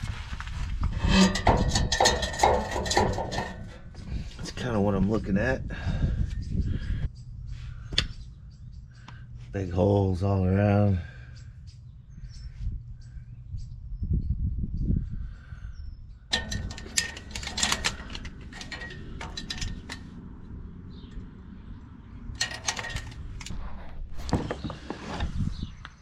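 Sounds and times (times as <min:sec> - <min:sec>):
metal tools clicking and clattering: 0:01.0 - 0:04.1, 0:16.3 - 0:20.3, 0:22.4 - 0:23.6.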